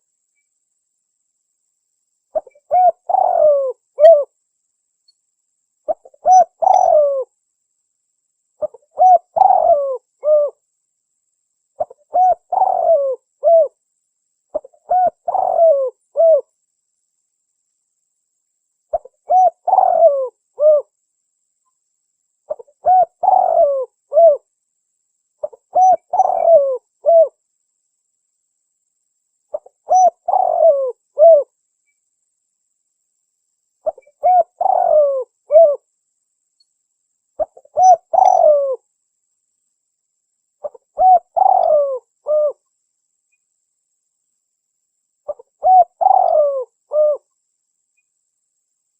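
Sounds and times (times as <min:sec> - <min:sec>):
dove cooing: 0:02.4 - 0:04.3, 0:05.9 - 0:07.3, 0:08.6 - 0:10.6, 0:11.8 - 0:13.8, 0:14.5 - 0:16.5, 0:18.9 - 0:20.9, 0:22.5 - 0:24.4, 0:25.4 - 0:27.4, 0:29.5 - 0:31.5, 0:33.8 - 0:35.8, 0:37.4 - 0:38.8, 0:40.6 - 0:42.6, 0:45.3 - 0:47.3.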